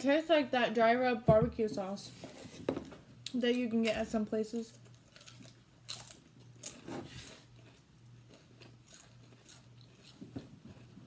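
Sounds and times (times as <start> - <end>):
person chewing crunchy chips: 4.7 - 11.0.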